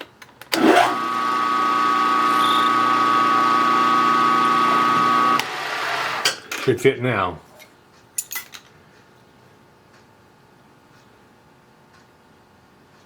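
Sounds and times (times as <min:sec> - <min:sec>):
milling machine spindle whine: 0:00.6 - 0:06.2.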